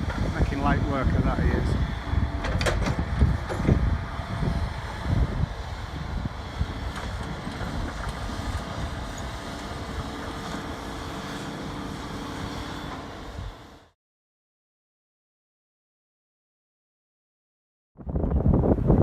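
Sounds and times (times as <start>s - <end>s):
wind buffeting microphone: 0.0s - 11.4s, 18.0s - 19.0s
diesel engine rumbling: 0.0s - 13.9s.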